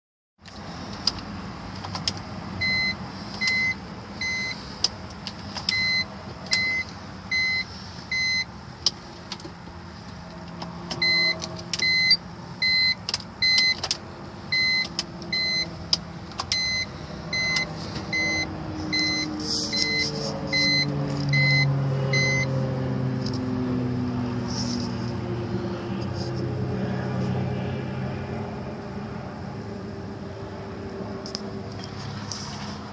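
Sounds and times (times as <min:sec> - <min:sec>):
short high electronic beeps: 0:16.6 - 0:22.5.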